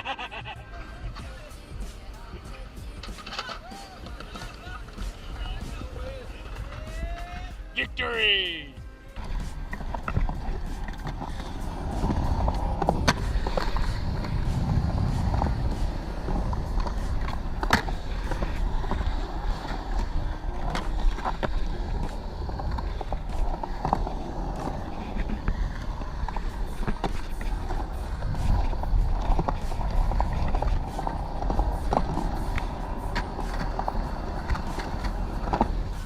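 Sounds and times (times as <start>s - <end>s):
skateboard wheels rolling on concrete: 0.0s - 36.0s
skateboard clacks and knocks: 9.7s - 36.0s.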